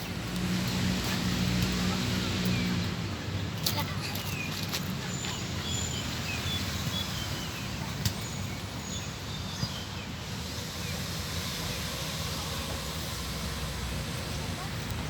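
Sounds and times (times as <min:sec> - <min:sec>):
outdoor background rumble: 0:00.0 - 0:15.0
small birds chirping: 0:03.8 - 0:13.2.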